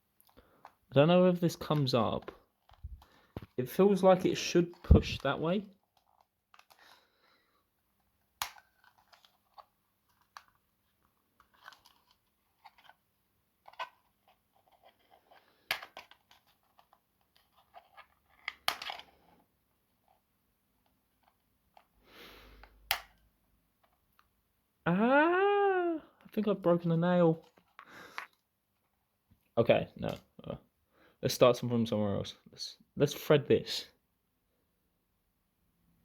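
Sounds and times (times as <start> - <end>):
plastic packaging clicks and snaps: 8.4 - 9.3
packaging rustling and scraping: 8.6 - 13.0, 13.6 - 19.4.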